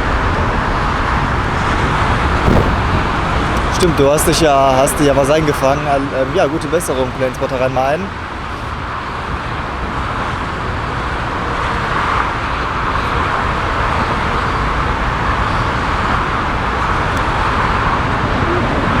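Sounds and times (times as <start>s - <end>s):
low rumble: 0.0s - 4.5s
jet rushing noise: 0.0s - 5.1s.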